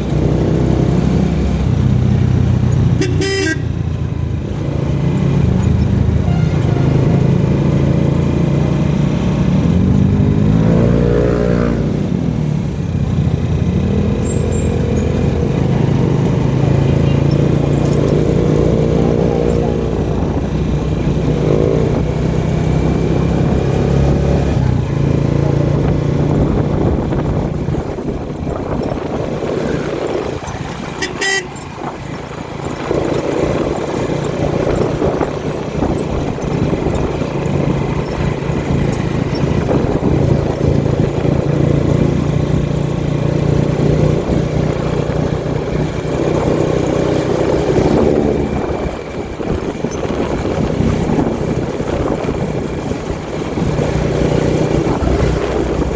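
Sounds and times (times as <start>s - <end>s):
traffic: 0.0s - 55.9s
vehicle engine running: 0.0s - 55.9s
car horns tooting: 2.8s - 4.0s, 6.0s - 7.7s, 14.1s - 20.5s, 30.5s - 31.9s.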